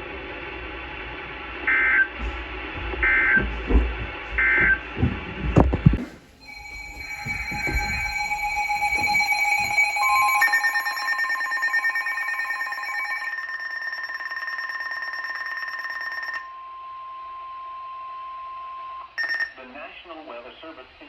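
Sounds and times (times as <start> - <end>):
electronic alert tones: 6.4 - 14.2
steady alarm tone: 6.4 - 16.5.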